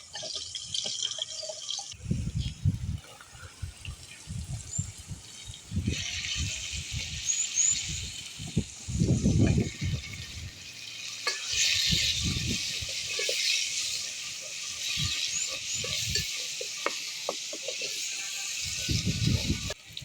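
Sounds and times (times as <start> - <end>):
food sizzling in a pan: 0.0 - 20.0
stirring knocks and scrapes: 0.1 - 1.6, 9.3 - 19.8.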